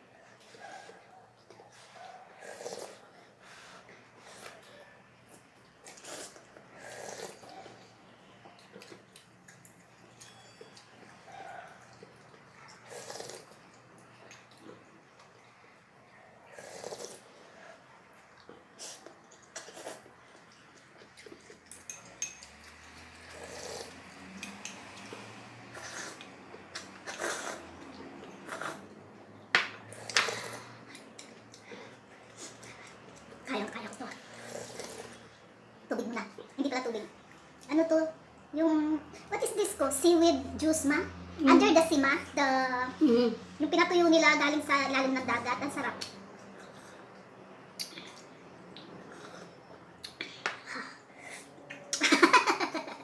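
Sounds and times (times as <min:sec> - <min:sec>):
slurping noodles: 0:01.8 - 0:04.7, 0:05.8 - 0:07.8, 0:12.6 - 0:13.6, 0:16.5 - 0:17.8, 0:18.5 - 0:20.5, 0:22.5 - 0:29.0, 0:29.9 - 0:31.0, 0:34.1 - 0:35.4, 0:48.9 - 0:49.7
utensil clinking: 0:21.6 - 0:22.9
mouth smacking and chewing: 0:47.8 - 0:50.4.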